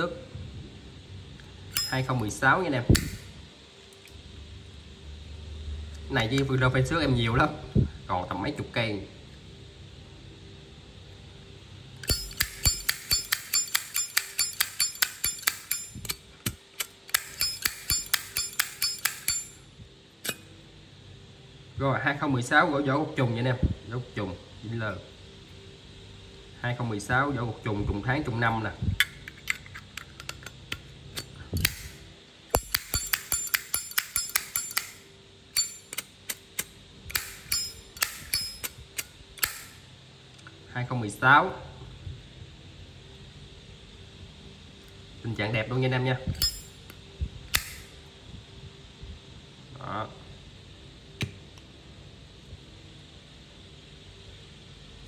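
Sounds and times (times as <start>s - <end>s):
metal lighter clicking: 1.7s - 2.1s, 12.0s - 16.2s, 16.8s - 19.6s, 31.2s - 32.0s, 32.6s - 39.8s, 47.5s - 47.9s
lighter lid clicking open and shut: 3.0s - 3.3s, 29.0s - 32.0s, 32.6s - 35.0s, 35.6s - 39.8s, 46.3s - 47.9s.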